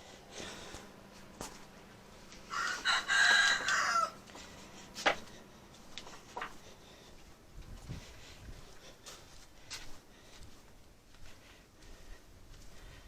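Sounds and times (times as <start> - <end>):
rooster crowing: 2.4 - 4.3.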